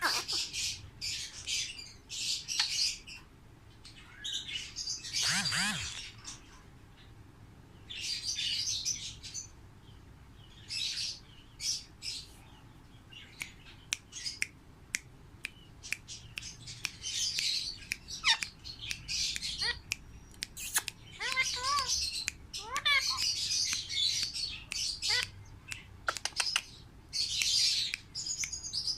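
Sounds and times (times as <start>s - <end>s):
parrot squawking: 0.0s - 0.5s, 5.1s - 6.2s, 19.5s - 19.9s, 20.6s - 23.4s, 25.0s - 25.4s
parrot clicking: 5.2s - 6.1s, 13.9s - 26.7s.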